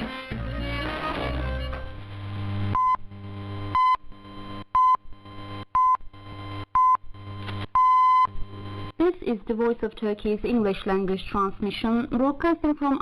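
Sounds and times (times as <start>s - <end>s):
shortwave hum and hiss: 0.0s - 4.6s, 8.3s - 9.6s
time signal beeps: 2.8s - 3.0s, 3.7s - 4.0s, 4.8s - 5.0s, 5.8s - 6.0s, 6.8s - 7.0s, 7.8s - 8.4s.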